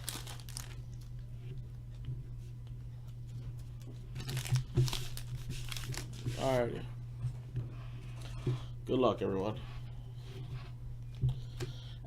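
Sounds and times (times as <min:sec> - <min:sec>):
wrapper tearing and crinkling: 0:00.0 - 0:01.0, 0:04.2 - 0:06.2.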